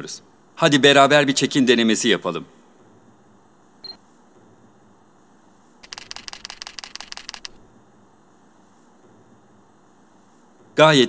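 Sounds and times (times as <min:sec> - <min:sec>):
camera shutter clicks: 0:05.8 - 0:07.6.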